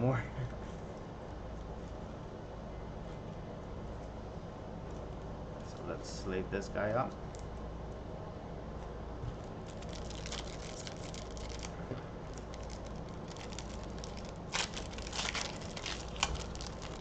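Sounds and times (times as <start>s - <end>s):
foil pack crinkling and tearing: 9.6s - 17.0s.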